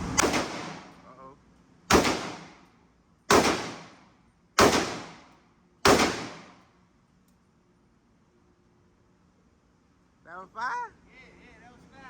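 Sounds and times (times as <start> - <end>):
rifle shots with echo: 0.1 - 1.0, 1.9 - 2.6, 3.3 - 4.0, 4.6 - 6.6.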